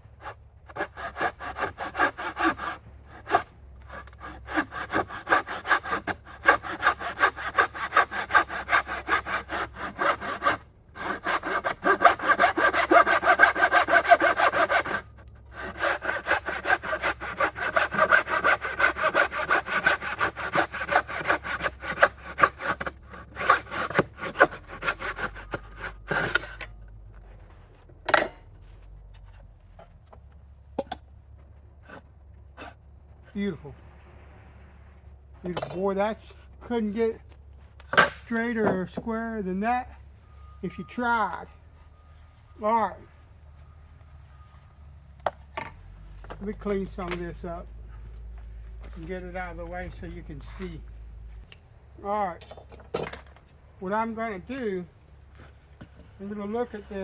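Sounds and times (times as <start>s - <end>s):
hand saw cutting wood: 0.2s - 26.7s, 46.5s - 47.6s, 56.2s - 57.0s.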